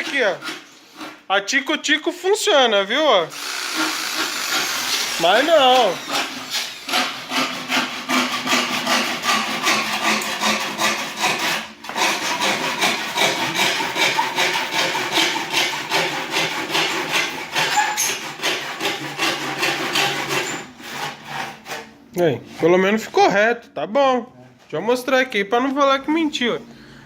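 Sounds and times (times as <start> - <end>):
hand saw cutting wood: 0.0 - 1.3, 3.3 - 21.9.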